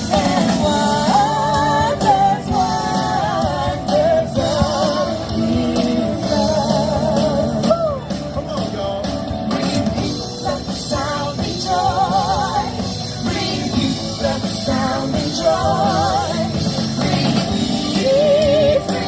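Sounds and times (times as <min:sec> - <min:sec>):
person singing with vibrato: 0:00.0 - 0:19.0.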